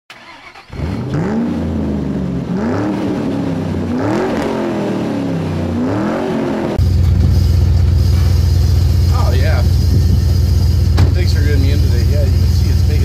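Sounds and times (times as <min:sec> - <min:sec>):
engine revving: 0:00.1 - 0:13.0
steady low hum: 0:06.8 - 0:13.0.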